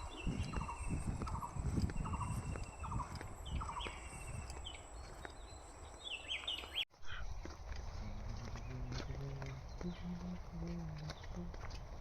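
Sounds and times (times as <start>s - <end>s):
high bird chirps: 0.0s - 6.9s.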